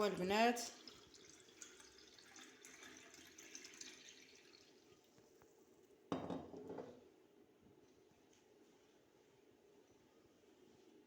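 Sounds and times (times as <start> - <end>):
liquid trickling and dripping: 0.7 - 5.6.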